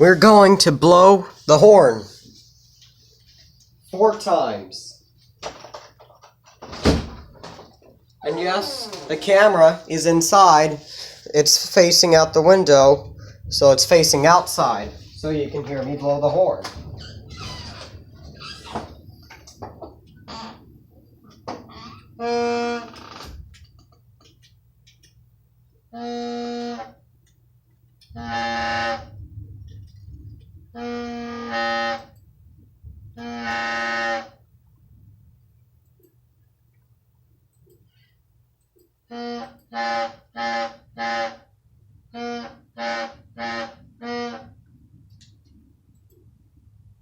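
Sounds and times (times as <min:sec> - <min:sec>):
horn blasts: 0:22.2 - 0:22.9, 0:25.9 - 0:27.0, 0:28.0 - 0:29.4, 0:30.7 - 0:32.2, 0:33.2 - 0:34.5, 0:39.1 - 0:44.6.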